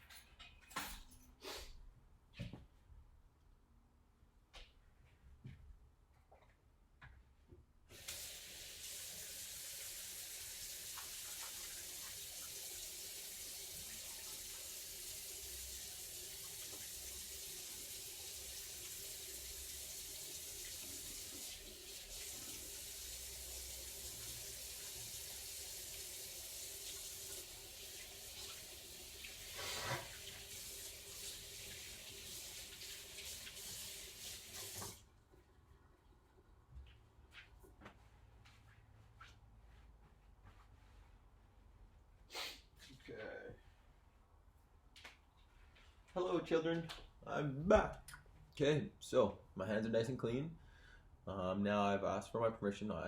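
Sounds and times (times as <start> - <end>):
faucet water running into sink: 7.9 - 35.1.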